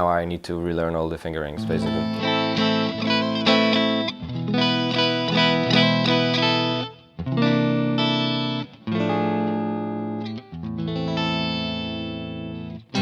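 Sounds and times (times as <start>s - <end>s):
electric guitar notes and chords: 1.6s - 13.0s.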